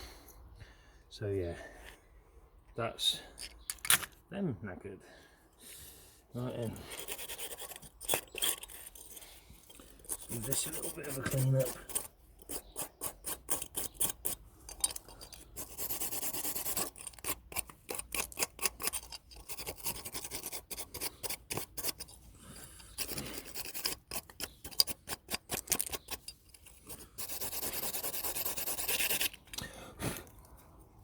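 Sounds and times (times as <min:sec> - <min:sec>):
scrubbing strokes on metal: 0:06.4 - 0:25.4, 0:26.0 - 0:29.4.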